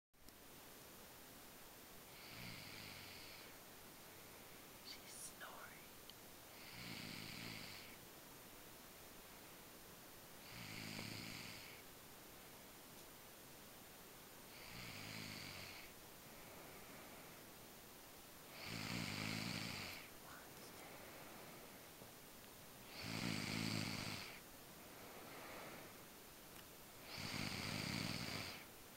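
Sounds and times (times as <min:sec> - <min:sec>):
faint steady hiss: 0:00.2 - 0:28.9
woman snoring: 0:02.1 - 0:03.6, 0:04.9 - 0:05.8, 0:06.5 - 0:08.0, 0:10.4 - 0:11.8, 0:14.5 - 0:15.9, 0:18.5 - 0:21.0, 0:22.9 - 0:24.4, 0:27.0 - 0:28.7
faint breath: 0:15.6 - 0:17.6, 0:19.9 - 0:21.9, 0:24.2 - 0:26.1.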